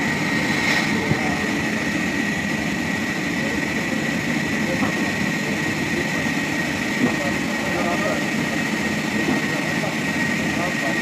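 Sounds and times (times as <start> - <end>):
sawmill machinery drone: 0.0 - 11.0.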